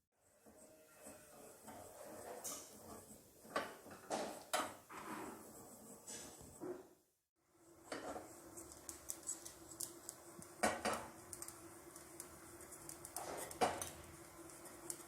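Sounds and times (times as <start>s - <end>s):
spoon scraping seeds in pan: 0.2s - 6.4s, 7.9s - 15.0s
light ticks of roasting seeds: 7.9s - 15.0s.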